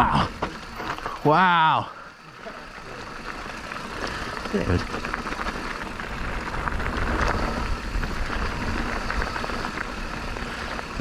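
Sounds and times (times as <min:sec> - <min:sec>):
bike rattling and clicking: 0:00.0 - 0:11.0
tyre noise on dirt: 0:00.0 - 0:11.0
wind rush on microphone: 0:04.3 - 0:11.0.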